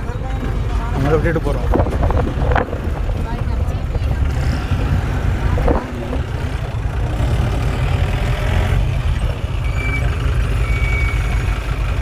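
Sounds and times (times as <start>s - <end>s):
vehicle engine and road rumble: 0.0s - 12.0s
faint high squeaks: 9.2s - 11.8s.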